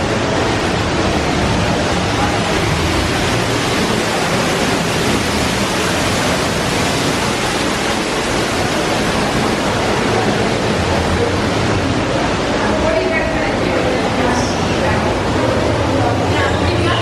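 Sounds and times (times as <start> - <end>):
steady rushing noise: 0.0 - 17.0.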